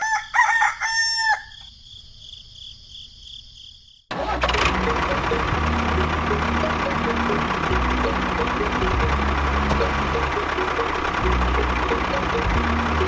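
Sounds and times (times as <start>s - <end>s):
rooster crowing: 0.0s - 1.8s
background music: 4.2s - 13.0s.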